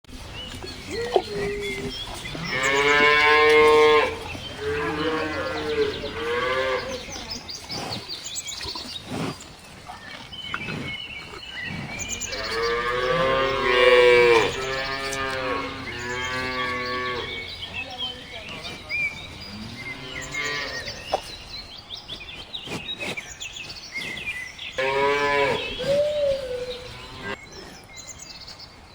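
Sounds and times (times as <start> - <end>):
cow mooing: 0.9 - 7.2, 12.1 - 17.5, 24.8 - 25.8.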